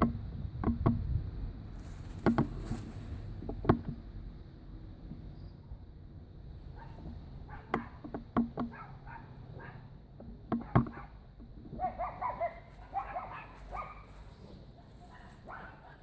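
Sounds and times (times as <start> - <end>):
sharp knocks: 0.0 - 1.2, 2.2 - 2.8, 3.4 - 4.0, 7.0 - 8.9, 10.2 - 11.8.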